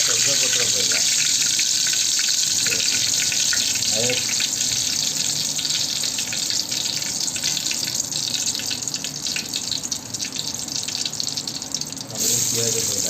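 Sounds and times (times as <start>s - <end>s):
hot oil sizzling and crackling: 0.0s - 13.0s.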